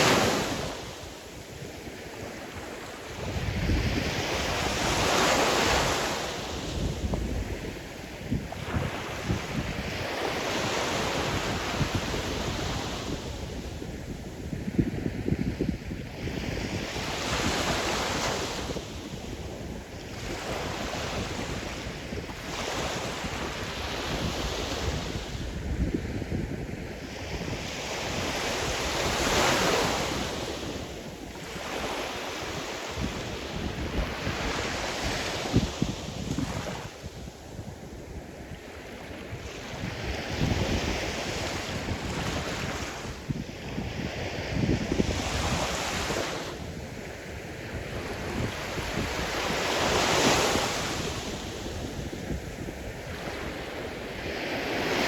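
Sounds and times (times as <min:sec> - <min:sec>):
waves breaking on shore: 0:00.0 - 0:14.8, 0:38.0 - 0:55.0
wind rumble on microphone: 0:00.0 - 0:55.0.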